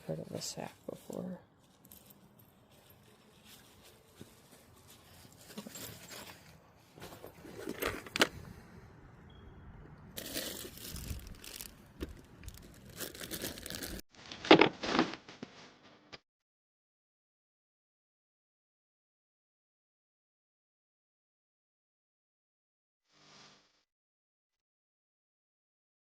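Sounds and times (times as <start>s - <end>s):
crinkling handling noise: 0.2s - 8.6s, 10.2s - 15.8s.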